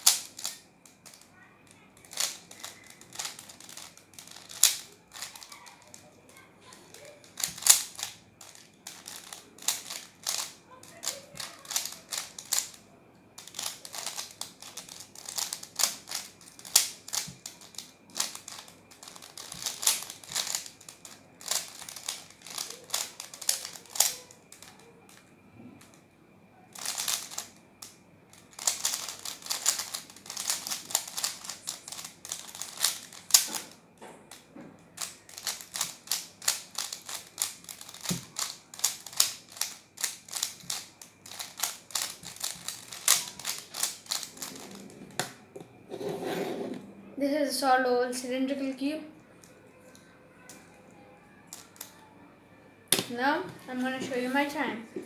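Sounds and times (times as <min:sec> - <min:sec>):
twisty puzzle layers clicking: 0:02.0 - 0:12.8, 0:13.4 - 0:24.9, 0:26.8 - 0:33.8, 0:35.0 - 0:44.8.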